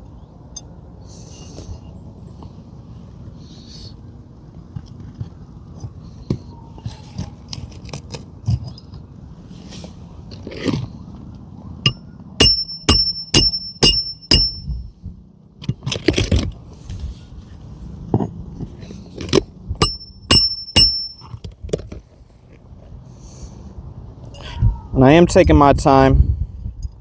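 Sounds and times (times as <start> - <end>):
hammer blows on a nail: 12.4 - 14.8, 19.8 - 21.4
shingles scraping and clicking: 15.6 - 16.6.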